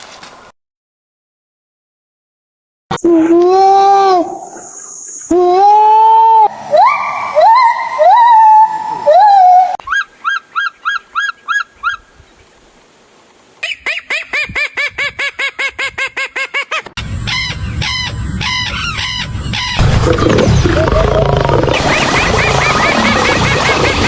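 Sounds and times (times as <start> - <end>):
animal calls: 5.5 - 12.1
noisy background: 17.0 - 24.0.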